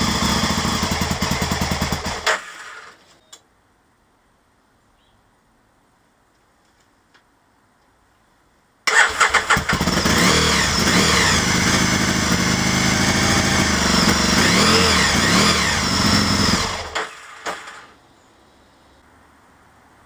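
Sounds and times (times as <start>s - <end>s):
motorcycle engine cranking and revving: 0.0s - 3.0s, 8.9s - 17.9s.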